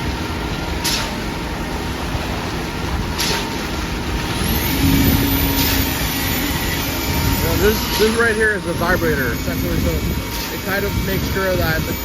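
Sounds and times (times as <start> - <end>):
concrete pump truck running: 0.0 - 12.0
high whine: 3.8 - 12.0.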